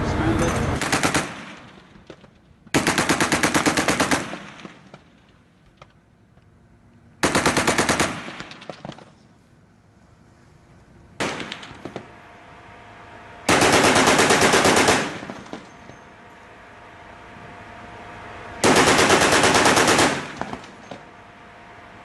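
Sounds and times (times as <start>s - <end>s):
chain gun firing bursts: 0.8s - 1.9s, 2.7s - 5.2s, 7.2s - 9.1s, 11.2s - 12.1s, 13.4s - 15.9s, 18.6s - 20.9s.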